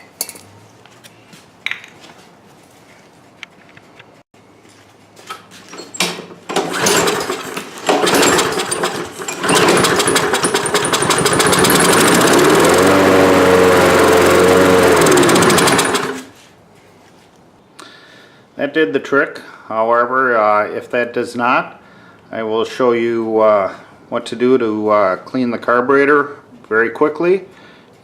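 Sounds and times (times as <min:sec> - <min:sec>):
lawn mower engine running: 0:05.9 - 0:16.4.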